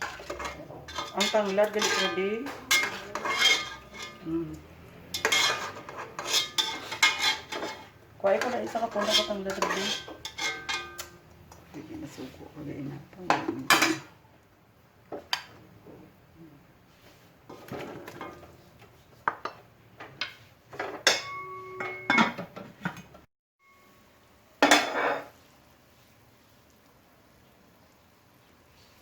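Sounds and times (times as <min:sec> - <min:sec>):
cookware clatter: 0:00.0 - 0:04.2, 0:05.1 - 0:11.2, 0:13.3 - 0:14.2, 0:19.3 - 0:23.1, 0:24.6 - 0:25.3
kitchen utensils knocking: 0:00.0 - 0:04.2, 0:05.1 - 0:11.2, 0:13.3 - 0:14.1, 0:20.7 - 0:23.0.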